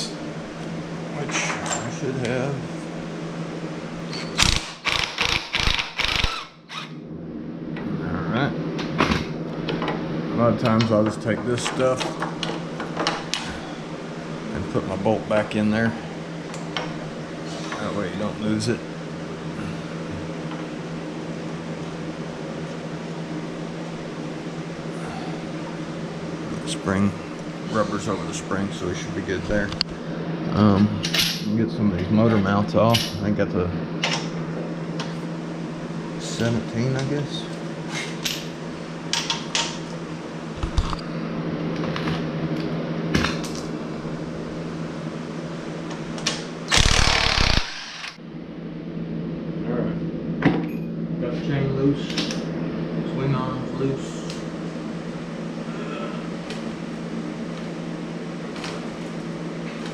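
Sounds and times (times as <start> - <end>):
steady hum: 0.0 - 59.9
impact wrench running: 4.2 - 6.9, 46.7 - 48.2
motor humming: 46.6 - 48.2.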